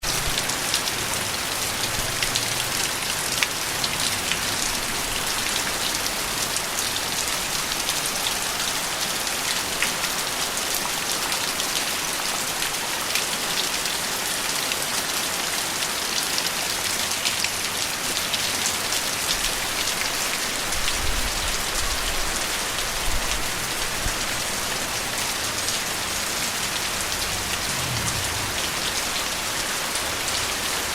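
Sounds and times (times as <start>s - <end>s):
rain pattering: 0.0s - 30.9s
faint low rumble: 26.8s - 29.7s.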